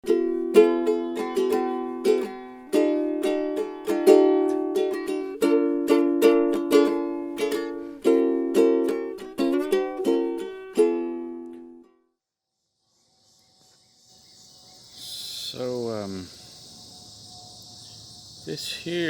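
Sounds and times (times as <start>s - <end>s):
strummed ukulele: 0.0s - 12.0s.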